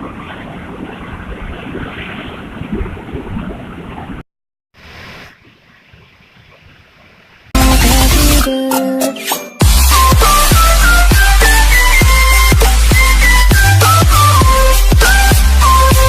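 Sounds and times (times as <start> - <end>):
music: 7.6 - 16.0.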